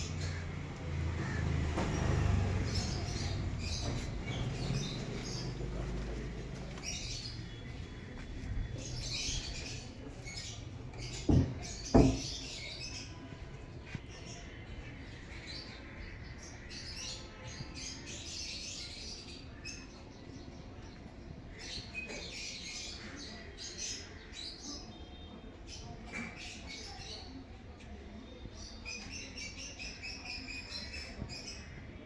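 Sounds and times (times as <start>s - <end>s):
small birds chirping: 0.0s - 24.9s
loud knock: 11.3s - 12.4s.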